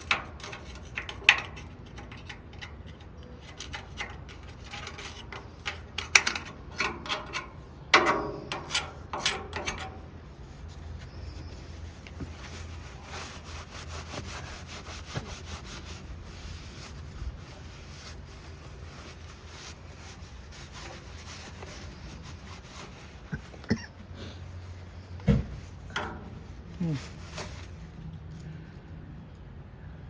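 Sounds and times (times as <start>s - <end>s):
scraping on a hard surface: 8.4s - 27.9s.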